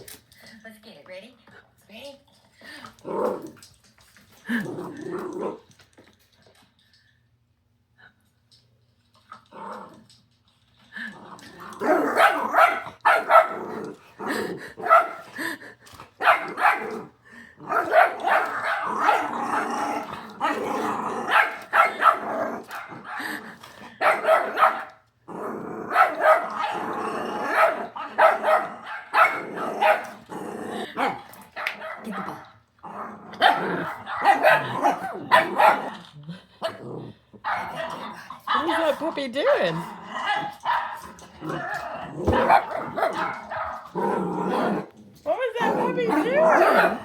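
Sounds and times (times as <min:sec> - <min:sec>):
puppy barking and growling: 0:11.0 - 0:47.0.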